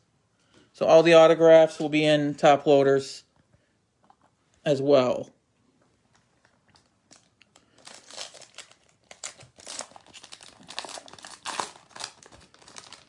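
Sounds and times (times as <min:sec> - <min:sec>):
card pack wrapper tearing and crinkling: 0:07.1 - 0:13.0.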